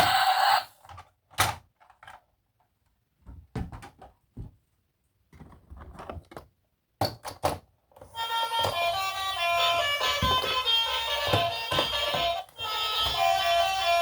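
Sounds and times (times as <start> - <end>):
toy packaging knocks and clicks: 0.8 - 2.7, 5.4 - 14.0.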